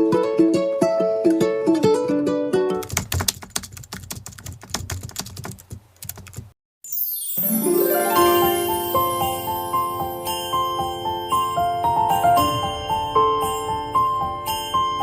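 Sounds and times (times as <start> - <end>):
rapid keyboard clicking: 2.7 - 6.6
bright rising chime sweep: 6.9 - 14.9
plucked notes tune: 7.0 - 15.0.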